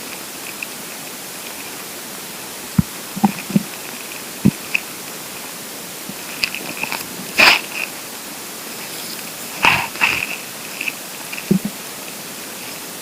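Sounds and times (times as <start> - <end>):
stomach gurgling: 2.7 - 4.8, 8.8 - 11.8.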